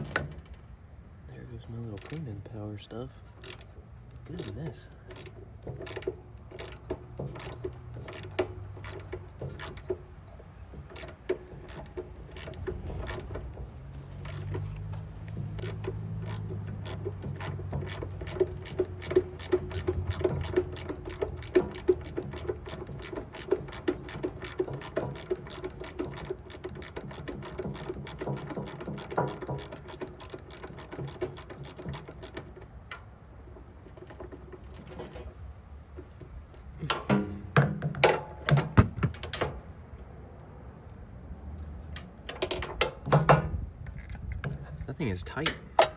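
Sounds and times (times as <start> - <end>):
ratchet wrench clicking: 3.4 - 13.4, 14.0 - 33.0.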